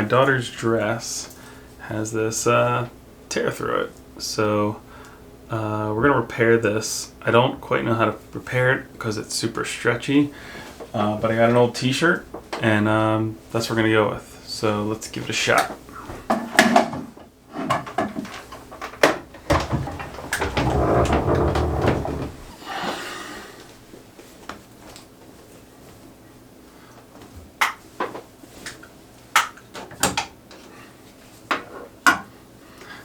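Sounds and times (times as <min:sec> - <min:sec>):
loud rustling: 0:19.3 - 0:22.6.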